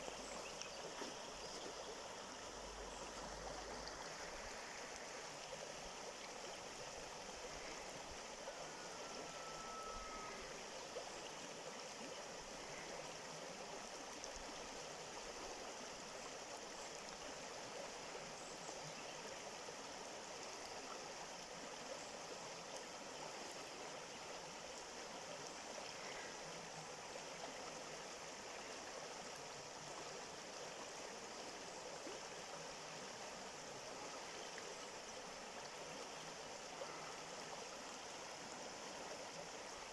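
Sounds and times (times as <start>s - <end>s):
water flowing: 0.0s - 39.9s
faint whistle: 8.5s - 10.4s.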